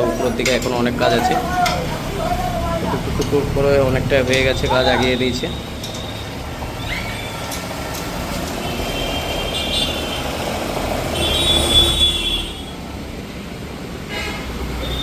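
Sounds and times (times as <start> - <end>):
road traffic rumbling past: 0.0 - 15.0
high-pitched car horn honking: 11.1 - 12.8.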